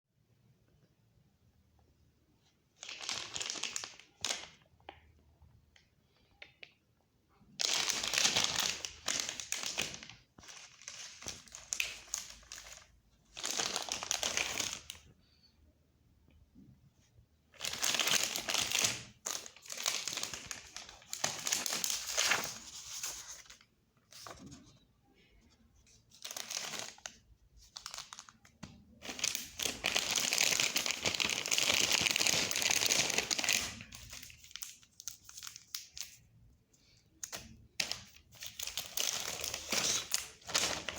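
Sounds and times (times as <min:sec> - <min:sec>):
packaging crinkling and tearing: 0:02.8 - 0:04.6, 0:07.6 - 0:15.0, 0:17.6 - 0:24.3, 0:26.1 - 0:36.2, 0:37.2 - 0:40.9.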